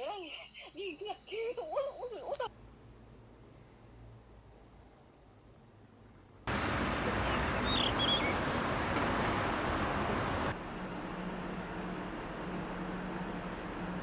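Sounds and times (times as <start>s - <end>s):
outdoor noise: 0.0s - 14.0s
small bird chirping: 6.5s - 10.5s.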